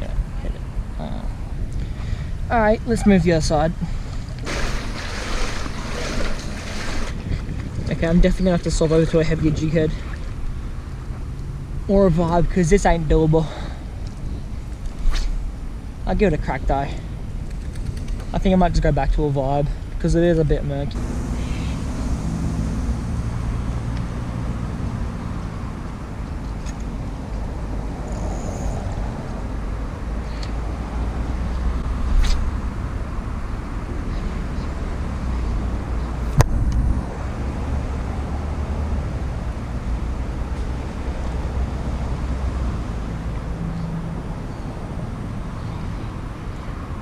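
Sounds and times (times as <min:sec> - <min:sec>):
traffic rumble: 0:00.0 - 0:47.0
sharp click: 0:32.2 - 0:32.5.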